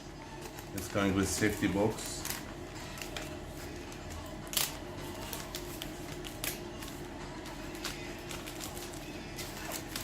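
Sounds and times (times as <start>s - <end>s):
sharp clicks of handled packaging: 4.0s - 7.0s, 7.7s - 10.0s.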